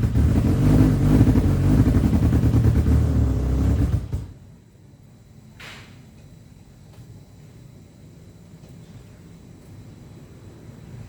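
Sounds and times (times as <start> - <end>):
scooter engine stuttering: 0.0 - 4.3.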